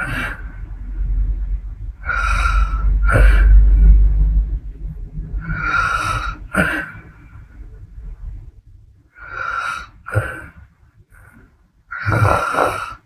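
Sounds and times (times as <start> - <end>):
woman snoring with snorts: 12.0 - 13.0.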